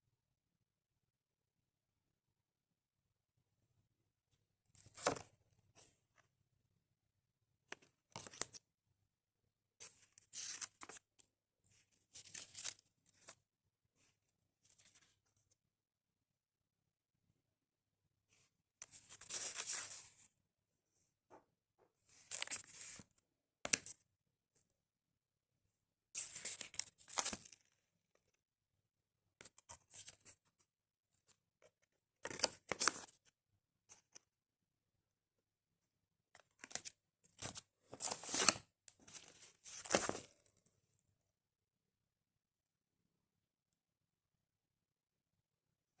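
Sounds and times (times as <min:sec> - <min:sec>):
paper rustling: 0:32.2 - 0:33.1, 0:36.6 - 0:40.3.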